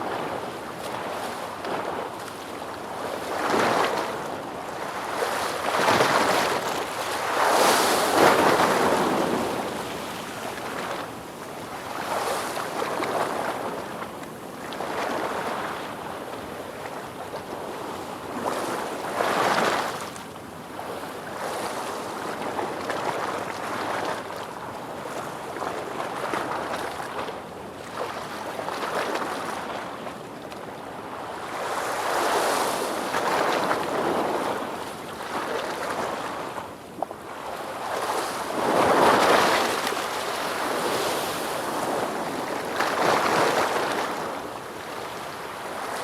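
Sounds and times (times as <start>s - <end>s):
ocean waves breaking on shore: 0.0s - 30.0s, 31.0s - 46.0s.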